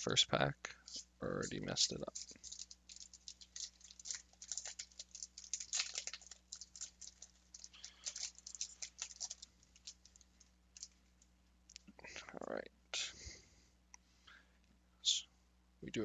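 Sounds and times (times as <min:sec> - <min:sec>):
foil wrapper crinkling: 0:00.8 - 0:11.3.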